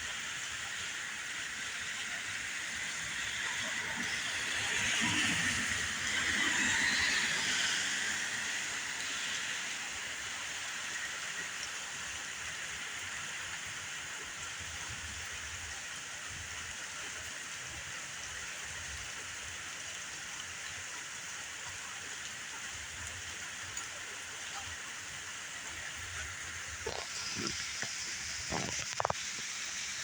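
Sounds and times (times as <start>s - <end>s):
steady rain falling: 0.0s - 30.0s.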